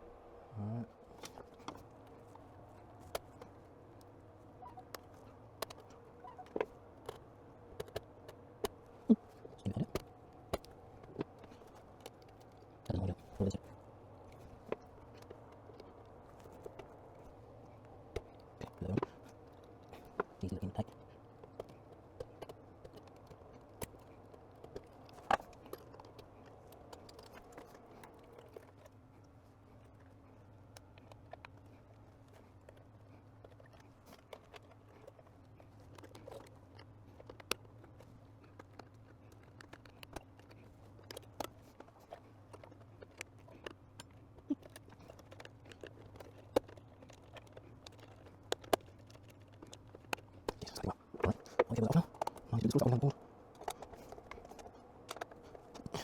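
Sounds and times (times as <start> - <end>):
faint steady hum: 0.0 - 56.0
small clicks and taps: 4.8 - 30.1, 30.7 - 56.0.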